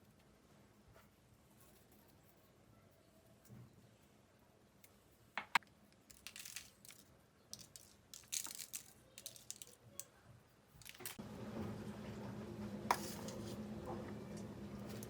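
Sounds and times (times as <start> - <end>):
crinkling and rustling: 5.9 - 11.2.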